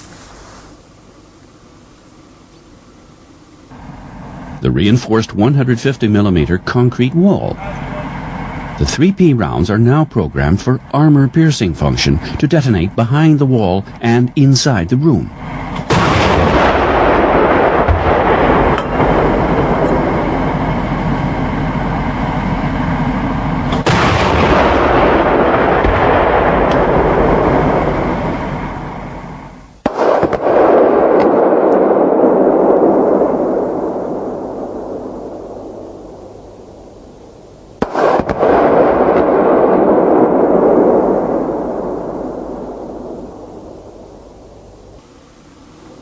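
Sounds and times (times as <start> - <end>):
cannon firing bursts: 3.7 - 45.3
long rumbling echo: 3.7 - 45.4
rounds bursting at a wall: 23.7 - 28.4, 37.8 - 43.3.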